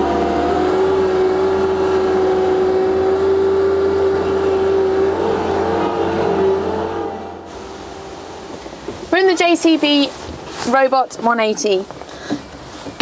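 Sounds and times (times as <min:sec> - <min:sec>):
diesel engine running at high revs: 0:00.0 - 0:10.1
engine whine: 0:00.0 - 0:10.4.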